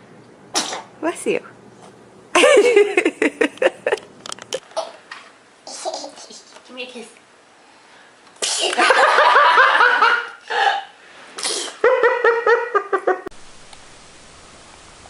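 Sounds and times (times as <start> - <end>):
small child giggling: 2.4 - 4.0, 5.7 - 6.6, 11.7 - 13.3.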